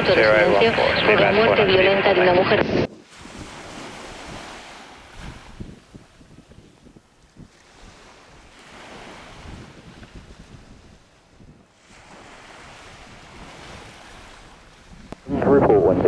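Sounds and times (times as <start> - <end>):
wind buffeting microphone: 0.0 - 16.0.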